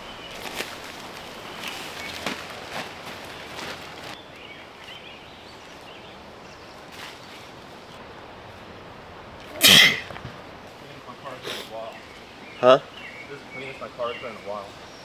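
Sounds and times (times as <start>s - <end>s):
soft footsteps: 7.1s - 10.8s.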